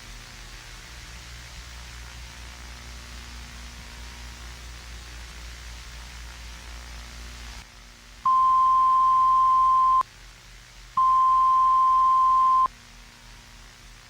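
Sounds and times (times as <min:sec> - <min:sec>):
low static hiss: 0:00.0 - 0:14.0
long electronic alert beeps: 0:08.3 - 0:10.0, 0:11.0 - 0:12.7.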